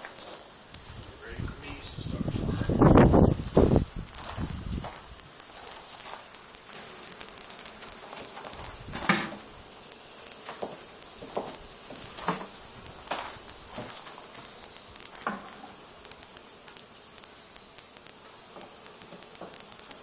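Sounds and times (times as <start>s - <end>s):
faint crackling hiss: 0.0s - 20.0s
handling knocks and rustles: 10.4s - 14.5s.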